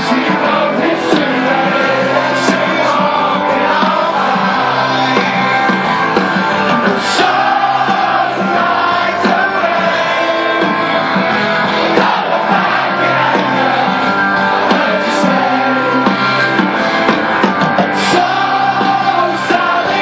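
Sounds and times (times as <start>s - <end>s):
person singing: 0.0s - 5.5s, 17.9s - 20.0s
live rock band playing: 0.0s - 20.0s.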